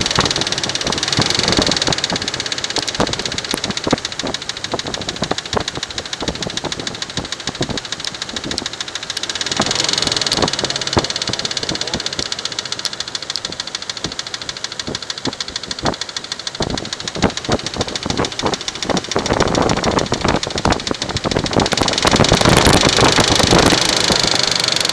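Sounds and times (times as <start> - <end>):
car engine running: 0.0 - 24.9
fast engine ticking: 0.0 - 24.9
sharp irregular clicks: 0.0 - 24.9.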